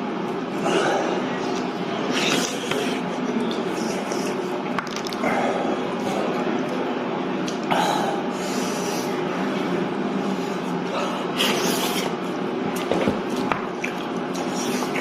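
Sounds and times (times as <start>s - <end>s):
chewing and wet mouth noises: 13.7s - 15.0s.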